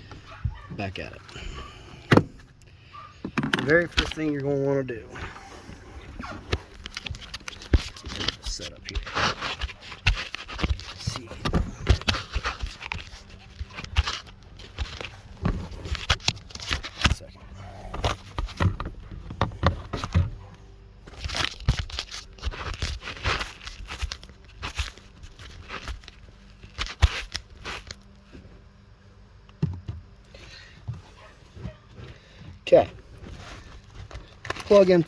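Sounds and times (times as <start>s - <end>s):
rustling and crinkling: 0.0s - 35.0s
parts clicking and knocking: 2.0s - 4.5s, 6.5s - 20.4s.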